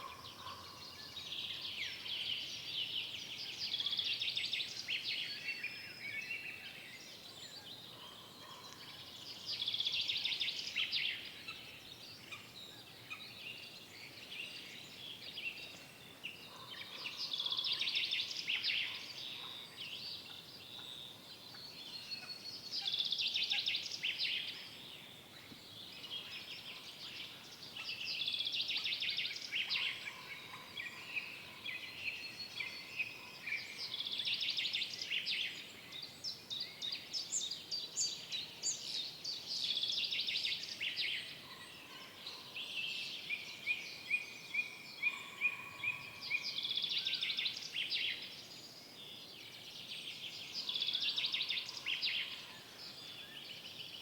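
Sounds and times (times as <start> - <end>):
songbird song phrase: 0.0 - 54.0
faint steady hiss: 17.2 - 41.5.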